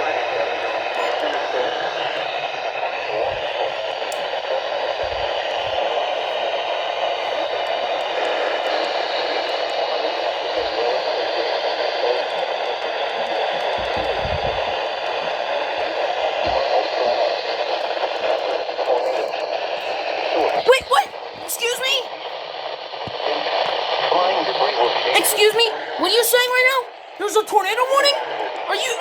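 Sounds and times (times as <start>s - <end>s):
radio static hiss: 0.0s - 29.0s.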